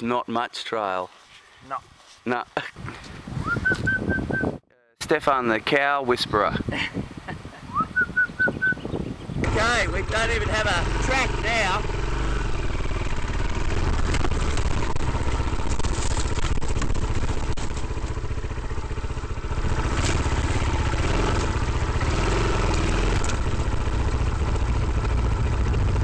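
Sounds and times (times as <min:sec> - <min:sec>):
motorcycle engine running: 0:08.0 - 0:26.0.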